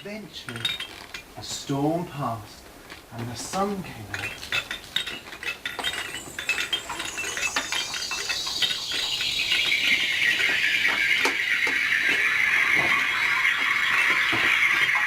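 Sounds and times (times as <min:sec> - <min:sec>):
shimmering rattling percussion hiss: 0:03.4 - 0:15.0.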